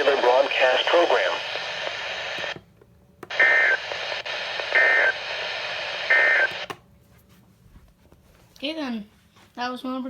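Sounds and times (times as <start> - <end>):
radio hiss: 0.0 - 2.6, 3.3 - 6.7.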